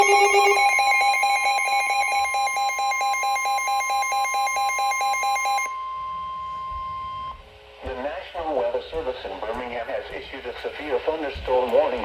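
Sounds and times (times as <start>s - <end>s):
pulsing electronic alert tone: 0.0s - 2.5s
steady high tone: 0.0s - 3.0s.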